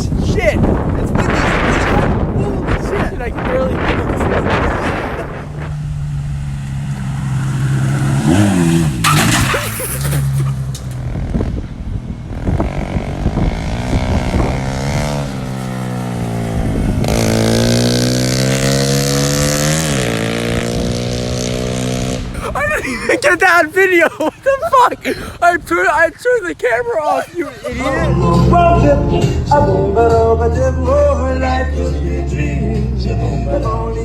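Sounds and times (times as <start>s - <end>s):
wind noise on microphone: 0.0s - 22.9s
car engine revving: 4.0s - 22.4s, 27.5s - 34.0s.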